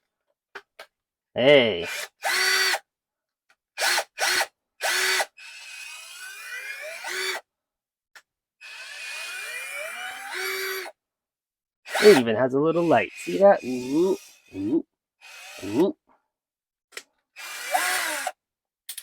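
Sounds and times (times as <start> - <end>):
cordless drill motor whirring: 1.8 - 2.8, 3.8 - 7.5, 8.6 - 11.0, 11.9 - 15.9, 17.4 - 18.4.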